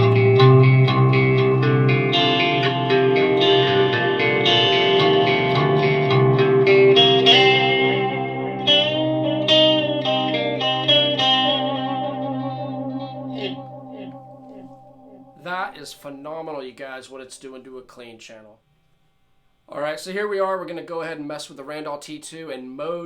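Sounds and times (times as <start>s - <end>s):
overdriven electric guitar: 0.0s - 16.0s.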